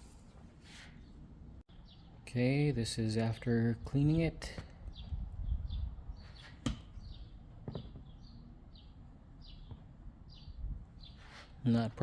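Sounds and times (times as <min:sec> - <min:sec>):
bird chirping: 0:04.9 - 0:11.3.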